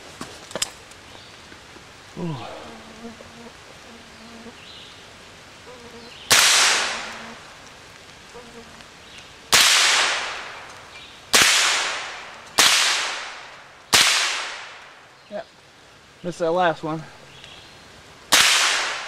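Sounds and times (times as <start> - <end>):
rifle gunshots: 6.3 - 7.1, 9.5 - 10.6, 11.3 - 14.8, 18.3 - 19.0.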